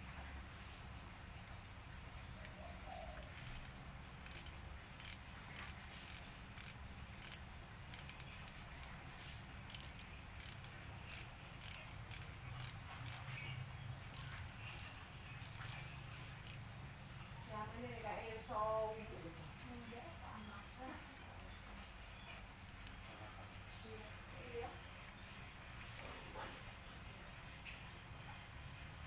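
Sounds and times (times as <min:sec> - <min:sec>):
fishing reel ratchet clicks: 0:03.1 - 0:16.7.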